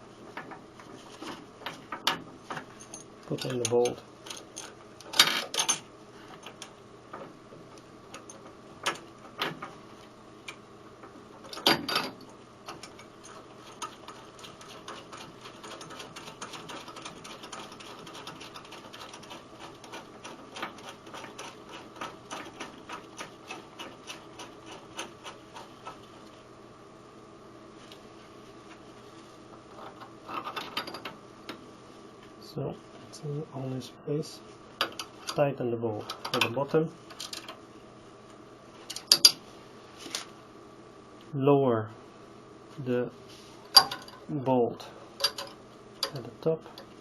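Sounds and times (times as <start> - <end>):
sharp knocks of parts: 11.5 - 13.1, 38.9 - 39.4, 43.7 - 44.3.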